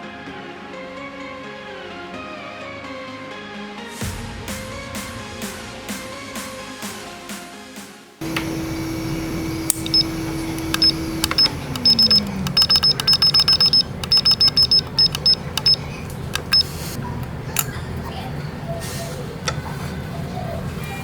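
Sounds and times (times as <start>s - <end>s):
steady hum: 8.2s - 19.6s
light clicks: 9.6s - 16.9s
high-pitched electronic beeps: 9.8s - 15.8s.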